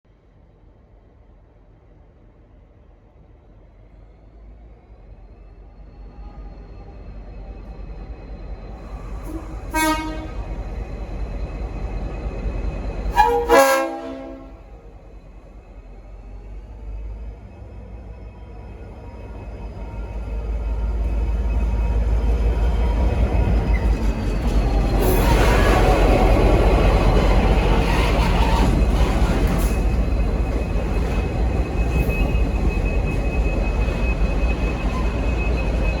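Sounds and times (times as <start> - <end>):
locomotive engine rumble: 8.8 - 36.0
locomotive air horn blasts: 9.2 - 10.5, 13.1 - 14.8
high-pitched wheel squeal: 13.1 - 14.6, 20.1 - 36.0.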